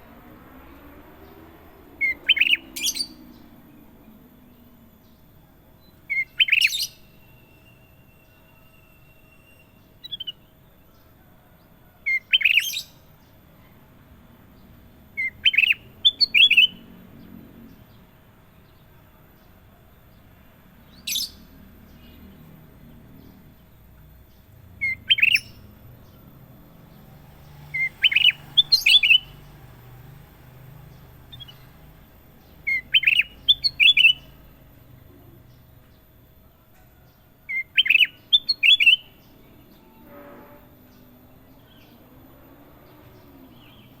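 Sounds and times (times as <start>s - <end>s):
bird singing whistled notes: 0.6s - 3.6s, 4.5s - 11.0s, 12.0s - 13.3s, 15.2s - 17.0s, 24.4s - 26.2s, 26.8s - 34.7s, 37.5s - 42.0s.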